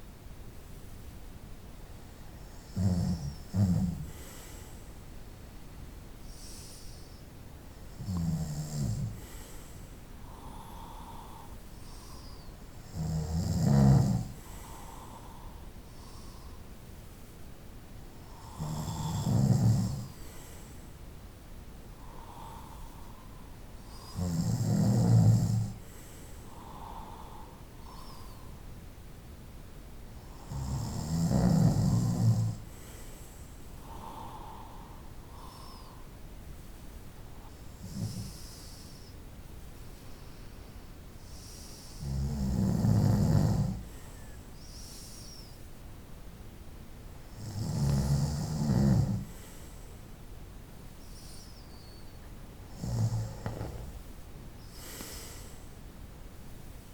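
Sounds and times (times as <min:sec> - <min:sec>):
soft breathing: 0:02.1 - 0:05.1, 0:06.2 - 0:12.9, 0:14.1 - 0:29.1, 0:31.6 - 0:45.7, 0:46.9 - 0:56.9
person snoring: 0:12.9 - 0:16.3, 0:18.3 - 0:20.2, 0:23.9 - 0:25.8, 0:30.3 - 0:32.6, 0:41.5 - 0:43.9, 0:47.3 - 0:49.5, 0:52.7 - 0:54.0.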